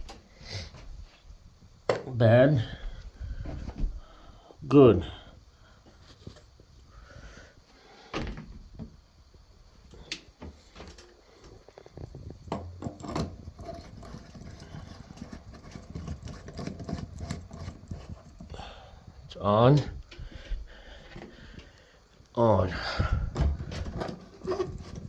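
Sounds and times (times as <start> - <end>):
soft rustling and scraping: 2.7 - 4.1, 5.8 - 6.9, 13.3 - 21.8, 23.3 - 25.0.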